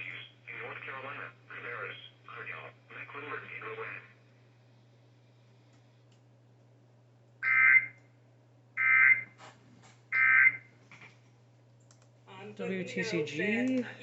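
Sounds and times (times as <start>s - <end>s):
steady low hum: 0.0s - 14.0s
faint clicks: 11.7s - 12.2s.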